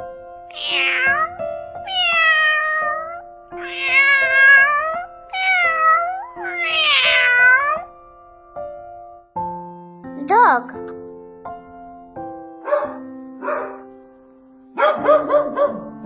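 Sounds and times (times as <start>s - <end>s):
background music: 0.0s - 16.0s
cat meowing: 0.5s - 7.9s.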